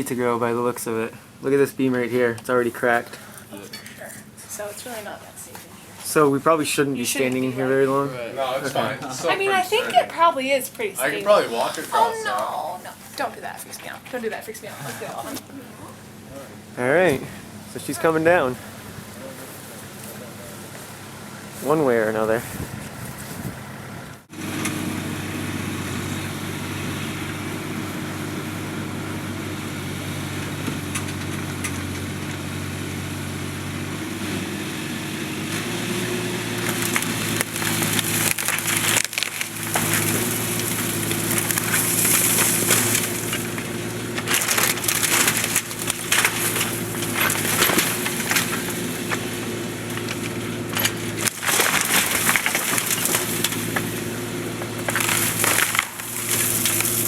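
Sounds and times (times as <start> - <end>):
excavator diesel engine running: 6.3 - 57.0
timbers cracking and crashing: 8.4 - 15.5, 24.3 - 57.0.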